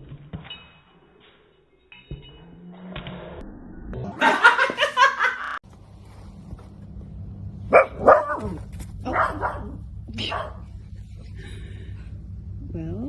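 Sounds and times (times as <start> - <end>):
person laughing hard: 4.1 - 5.6
dog barking: 7.7 - 10.7.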